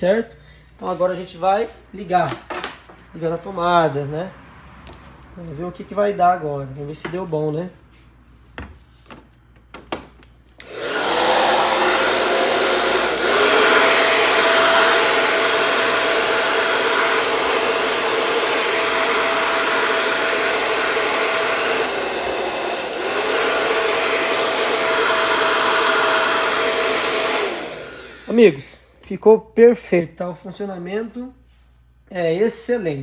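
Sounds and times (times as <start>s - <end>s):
hair dryer running: 10.6s - 28.8s.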